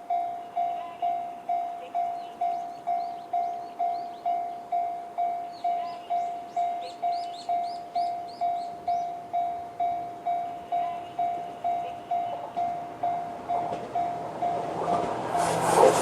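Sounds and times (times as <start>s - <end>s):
approaching train rumble: 0.0s - 16.0s
level-crossing alarm dinging: 0.0s - 16.0s.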